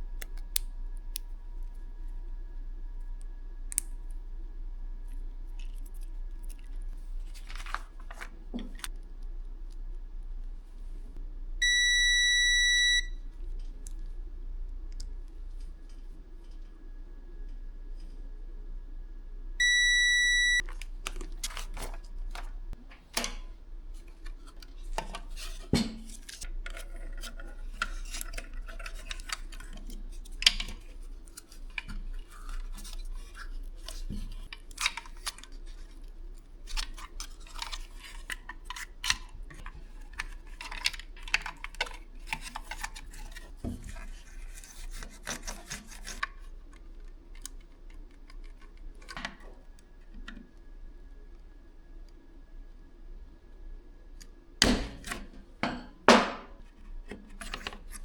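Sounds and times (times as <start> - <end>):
electronic beep: 11.6 - 13.2, 19.6 - 20.6.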